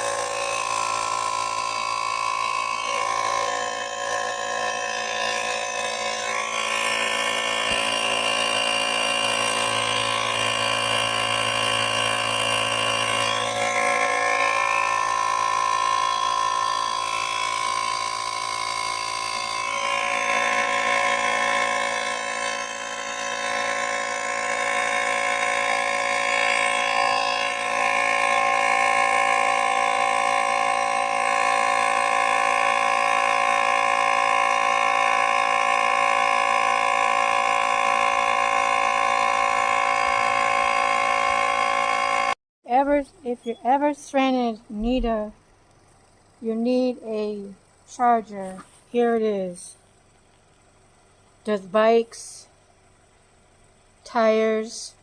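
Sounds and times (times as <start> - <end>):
tire inflator pump buzzing: 0.0 - 42.4.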